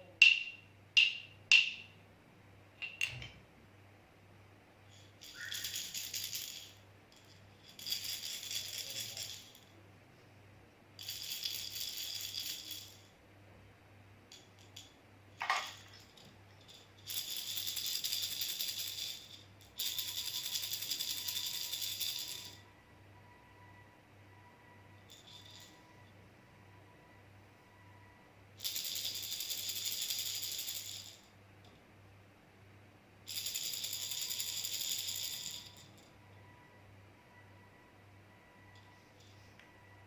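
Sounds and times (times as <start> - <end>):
baby rattle shaking: 5.0 - 9.6, 11.0 - 13.0, 15.6 - 22.6, 28.6 - 31.2, 33.3 - 36.0.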